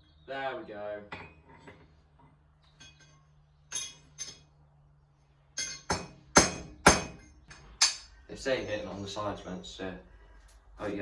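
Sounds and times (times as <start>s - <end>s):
hammer striking steel punch: 5.6s - 8.1s.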